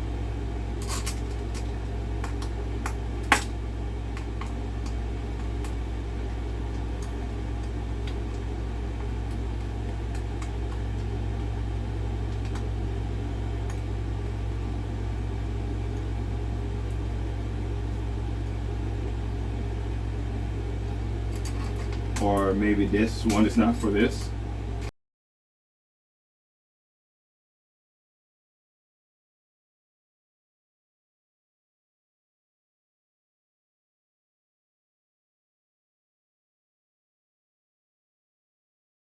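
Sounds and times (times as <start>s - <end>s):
steady low hum: 0.0s - 24.9s.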